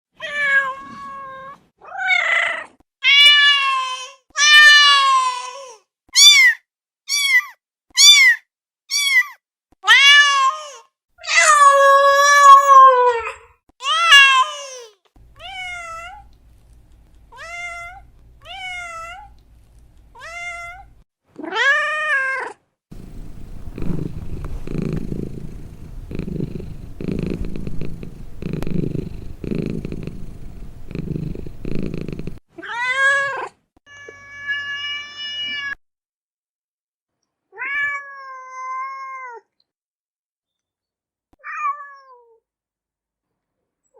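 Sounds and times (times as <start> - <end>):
cat purring: 22.9 - 32.4.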